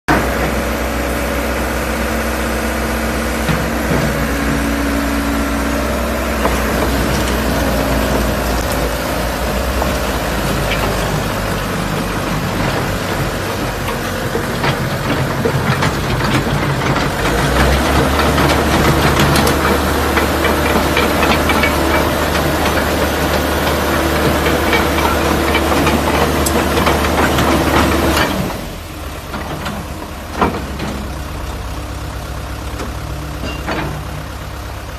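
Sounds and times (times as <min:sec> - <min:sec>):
excavator diesel engine running: 0:00.1 - 0:34.9
sharp clicks and knocks: 0:06.4 - 0:28.4.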